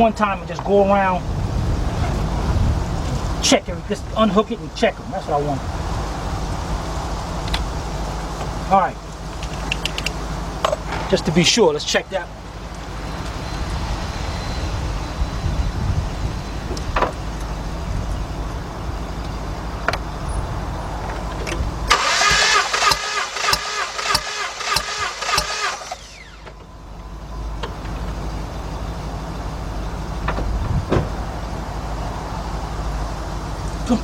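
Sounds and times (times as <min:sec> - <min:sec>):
car engine cranking on starter: 0:21.9 - 0:26.7.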